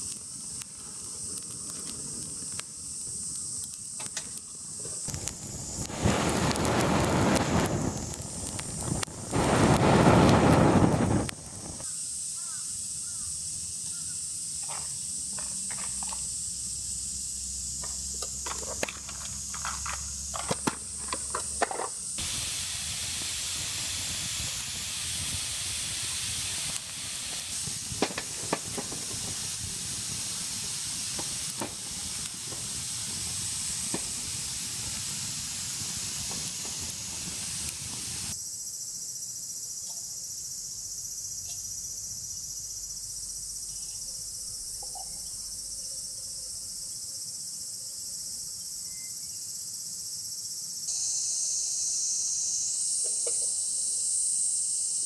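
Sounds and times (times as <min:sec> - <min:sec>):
insects droning: 0:00.0 - 0:55.0
steady even hiss: 0:00.0 - 0:55.0.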